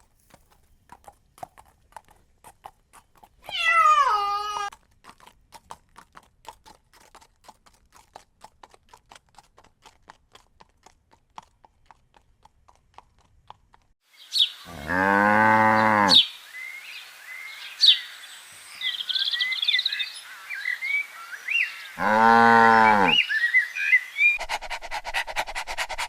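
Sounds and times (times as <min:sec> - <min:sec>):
hooves clip-clopping: 0:00.0 - 0:14.0
horse whinnying: 0:03.4 - 0:04.7
cow mooing: 0:14.7 - 0:16.2, 0:22.0 - 0:23.2.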